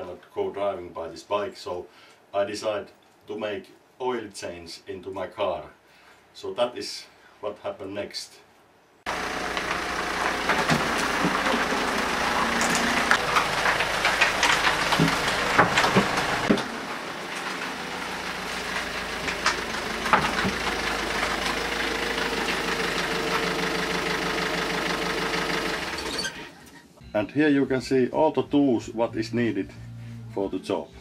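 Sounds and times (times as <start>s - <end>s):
engine running steadily: 9.1s - 26.4s.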